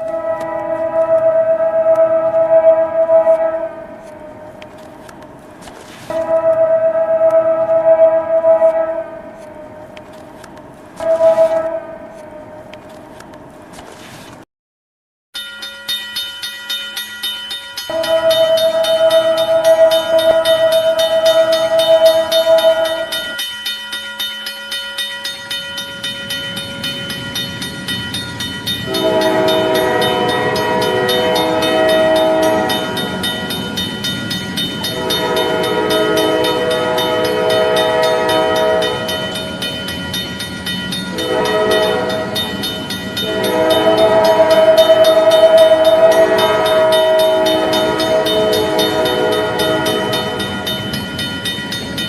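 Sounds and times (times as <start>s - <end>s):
locomotive air horn: 0.0s - 4.5s, 6.0s - 9.9s, 11.0s - 12.6s, 17.9s - 23.3s, 28.9s - 33.7s, 34.8s - 39.7s, 41.1s - 50.8s
railroad crossing bell ringing: 15.4s - 52.0s.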